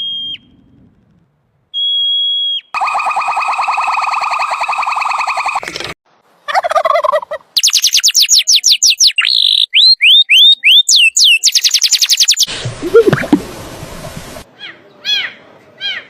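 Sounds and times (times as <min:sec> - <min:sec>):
fast pulsed bird call: 0:07.0 - 0:13.4
high bird whistles: 0:07.6 - 0:12.5.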